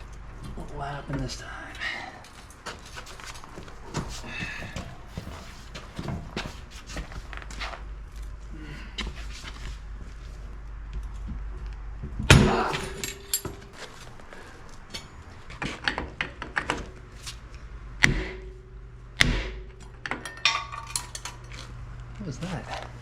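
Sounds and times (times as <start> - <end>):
ringing metal clanks: 12.3 - 13.9, 19.4 - 21.6
small metal clinks: 12.7 - 14.0, 19.8 - 21.8.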